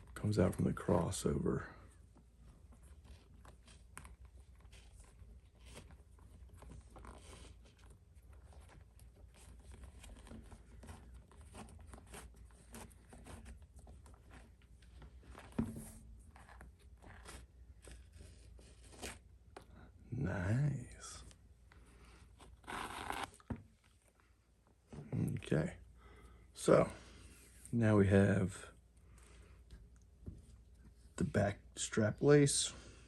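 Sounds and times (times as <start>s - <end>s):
glove handling: 0.0s - 31.8s
leather lace rasping through holes: 22.4s - 23.5s.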